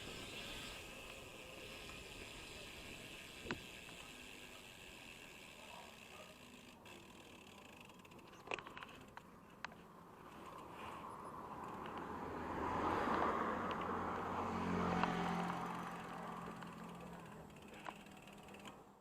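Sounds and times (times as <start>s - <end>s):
motor vehicle passing by: 10.4s - 18.8s.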